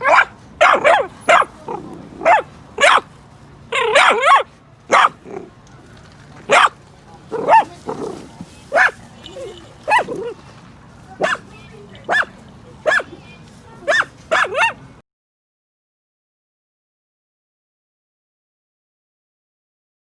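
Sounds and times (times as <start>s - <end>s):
dog barking: 0.0s - 3.1s, 3.7s - 5.5s, 6.5s - 10.4s, 11.2s - 13.2s, 13.8s - 14.8s.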